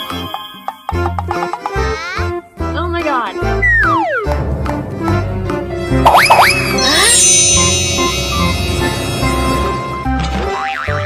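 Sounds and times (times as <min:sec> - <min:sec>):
ominous background music: 0:03.4 - 0:10.5.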